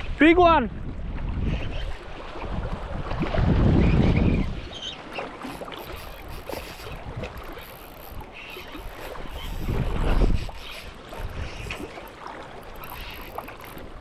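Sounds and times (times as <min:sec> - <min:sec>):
wind: 0:00.0 - 0:14.0.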